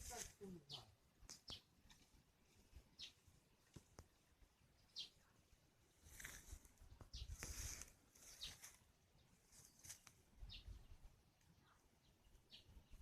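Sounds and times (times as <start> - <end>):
bird chirp: 0.4 - 1.7, 2.9 - 3.3, 4.6 - 5.5, 8.2 - 13.0
faint rustling: 6.0 - 10.3.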